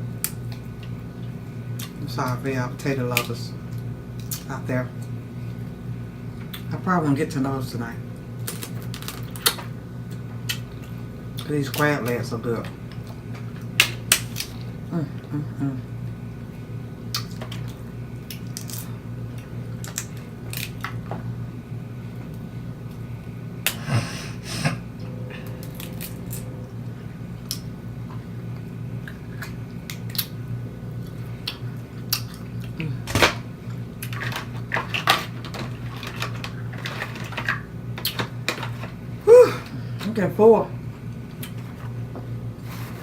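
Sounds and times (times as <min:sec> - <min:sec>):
steady low hum: 0:00.0 - 0:43.0
crab shells cracking: 0:08.4 - 0:12.2, 0:12.8 - 0:14.8, 0:17.1 - 0:21.0
chewing: 0:25.0 - 0:30.4, 0:31.0 - 0:32.9.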